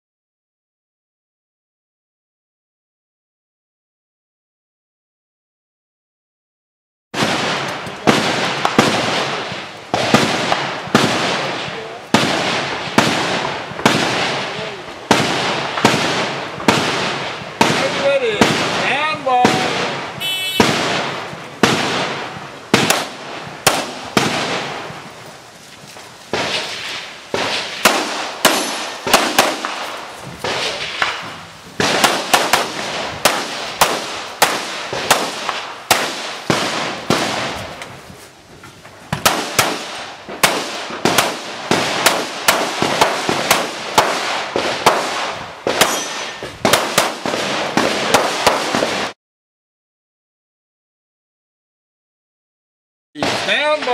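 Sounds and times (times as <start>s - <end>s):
pistol shots: 7.2s - 25.1s, 26.3s - 37.7s, 39.1s - 49.2s, 53.2s - 53.9s.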